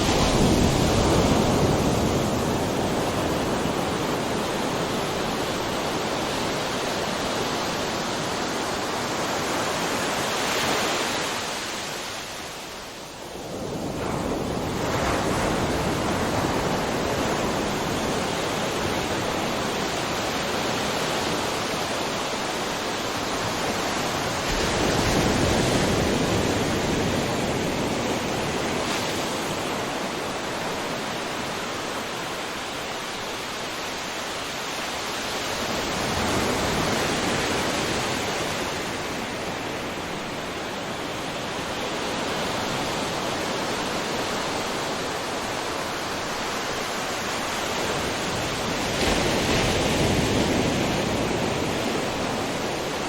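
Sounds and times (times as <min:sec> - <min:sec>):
ocean surf washing on shore: 0:00.0 - 0:53.0.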